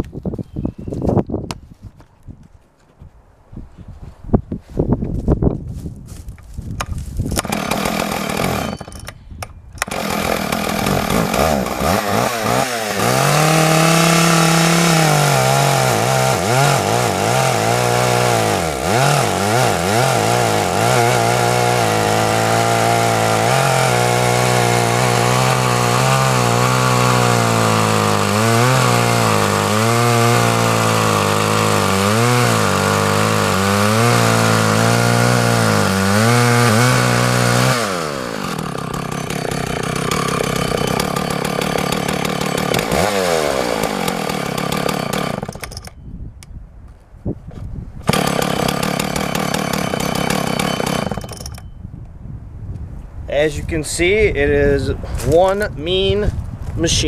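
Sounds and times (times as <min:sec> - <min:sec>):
chainsaw cutting a log: 0:07.4 - 0:09.1, 0:09.8 - 0:46.0, 0:48.0 - 0:51.7.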